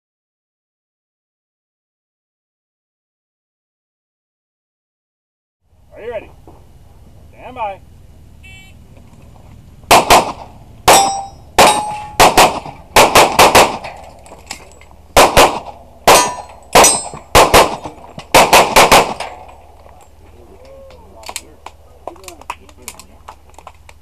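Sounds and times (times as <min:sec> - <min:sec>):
handgun shots: 0:09.9 - 0:14.2, 0:15.2 - 0:19.5
steel targets clanging: 0:10.9 - 0:12.8, 0:15.6 - 0:18.2.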